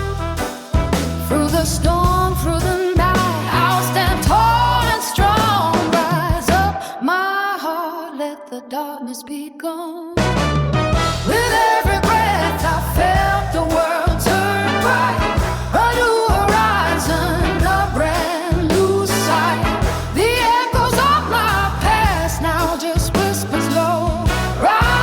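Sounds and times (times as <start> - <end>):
bass and drum beat: 0.0 - 6.8, 10.2 - 25.0.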